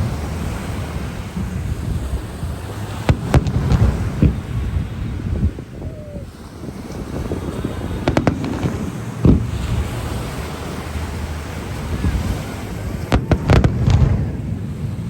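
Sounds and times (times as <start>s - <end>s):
fireworks booming: 0.0s - 15.0s
low rumble: 0.0s - 15.0s
fireworks bangs: 2.2s - 15.0s.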